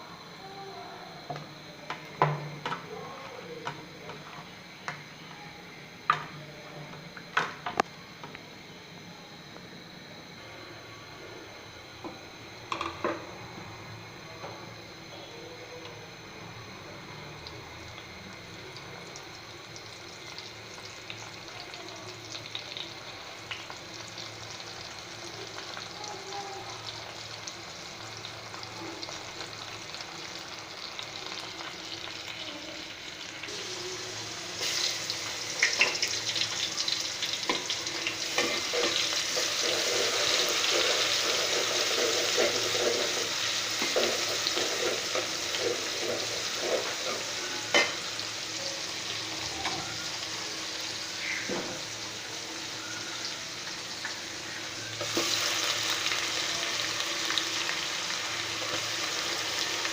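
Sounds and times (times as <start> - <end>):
food sizzling in hot oil: 14.8 - 59.9.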